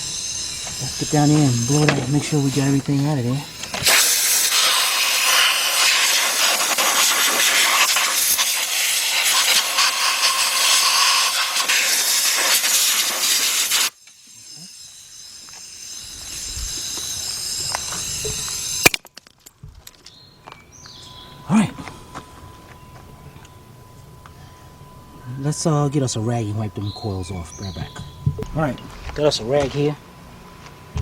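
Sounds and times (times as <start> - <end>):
compressed air blow gun hissing: 0.0 - 18.9.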